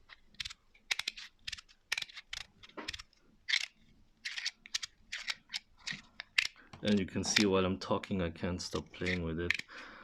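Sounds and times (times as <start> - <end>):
fidget slider clicks and scrapes: 0.4 - 7.5.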